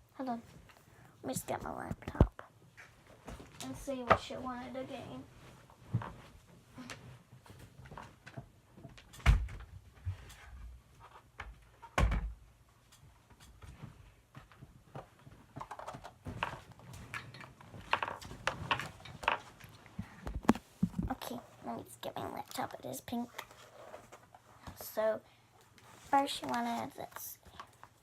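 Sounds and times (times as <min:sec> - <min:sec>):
rustling: 0:22.6 - 0:25.0.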